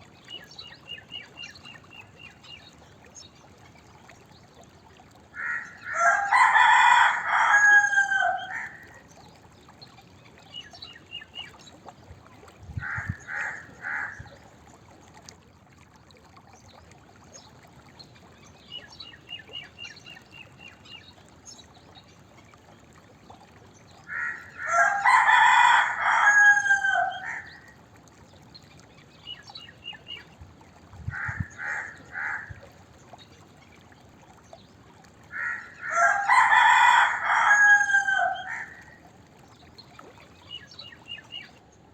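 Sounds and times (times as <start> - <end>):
rooster crowing: 5.8 - 8.8, 24.6 - 27.5, 35.8 - 38.8.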